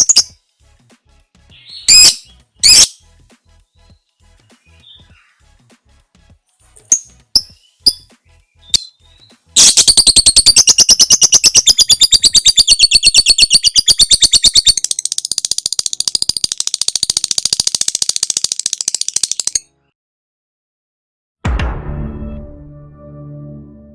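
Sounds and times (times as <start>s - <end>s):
bird chattering trill: 7.4s - 9.0s, 9.6s - 19.6s.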